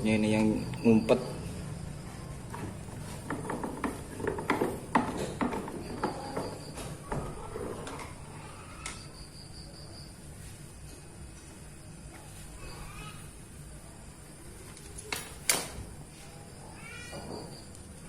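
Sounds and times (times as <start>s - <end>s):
clicks and knocks of metal tools: 14.7s - 15.8s.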